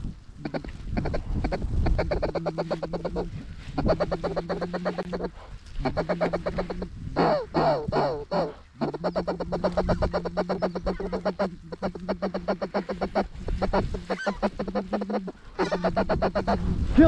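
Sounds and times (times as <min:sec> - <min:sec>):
geese honking: 0:00.4 - 0:16.6.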